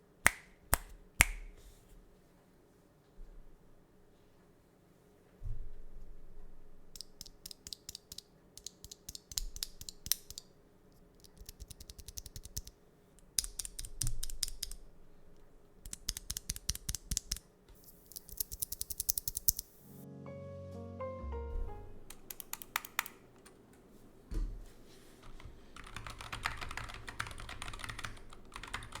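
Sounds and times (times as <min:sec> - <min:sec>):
clicky mechanical keyboard keystrokes: 0:07.0 - 0:10.5, 0:11.2 - 0:12.7, 0:13.4 - 0:14.8, 0:15.8 - 0:17.4, 0:18.0 - 0:19.8, 0:22.1 - 0:23.6, 0:25.2 - 0:29.0
music: 0:19.8 - 0:22.3.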